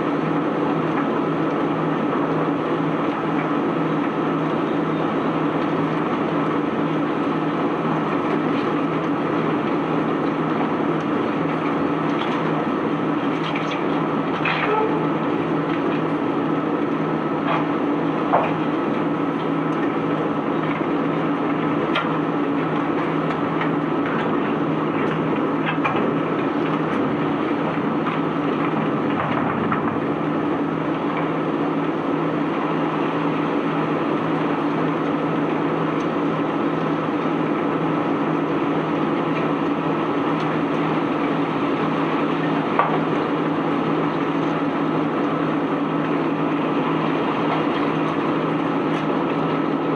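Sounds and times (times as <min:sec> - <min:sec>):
machinery humming: 0:00.0 - 0:49.9
cobblestones knocking and clattering: 0:28.1 - 0:30.4.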